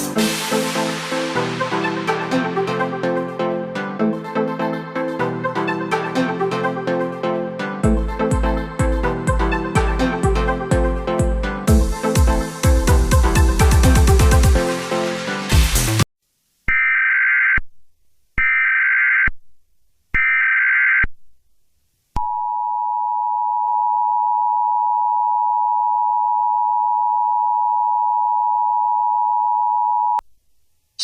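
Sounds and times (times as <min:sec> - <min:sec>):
electronic music: 0:00.0 - 0:16.1.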